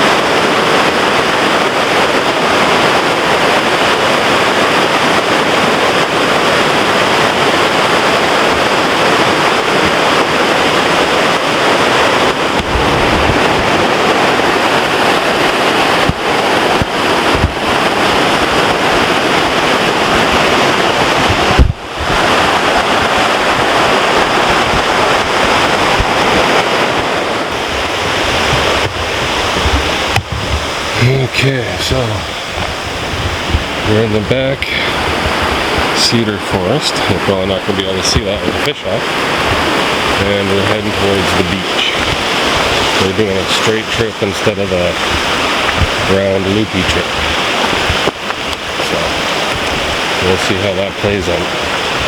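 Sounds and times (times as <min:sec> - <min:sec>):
fast-flowing water rushing: 0:00.0 - 0:52.0
low thumps: 0:11.0 - 0:40.9, 0:41.8 - 0:50.1.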